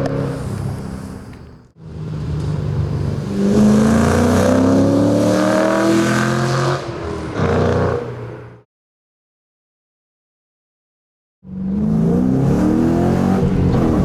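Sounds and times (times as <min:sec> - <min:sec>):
car engine accelerating: 0:00.0 - 0:08.6, 0:11.4 - 0:14.0.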